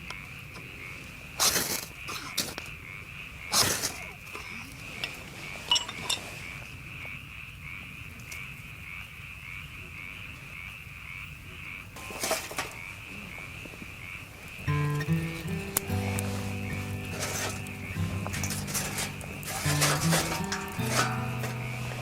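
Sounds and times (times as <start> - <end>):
pulsing chorus of calling animals: 6.4 - 22.0.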